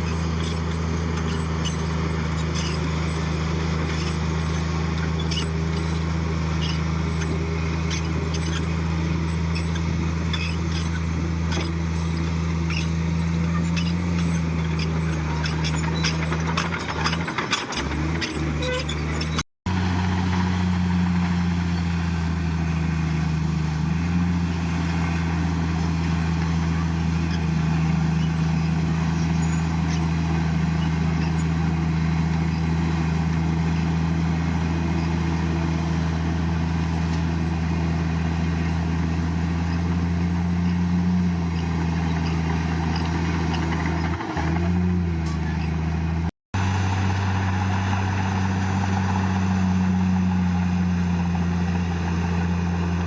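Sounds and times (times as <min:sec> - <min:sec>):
machinery clattering: 0:00.0 - 0:19.4
heavy diesel engine running: 0:00.0 - 0:53.0.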